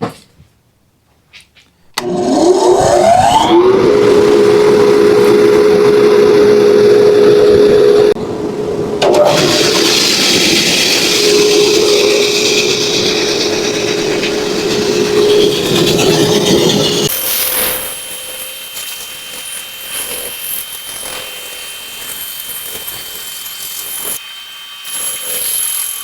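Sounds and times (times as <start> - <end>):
bandsaw humming: 2.0 - 8.2, 9.0 - 26.0
saw blade cutting wood: 9.0 - 26.0.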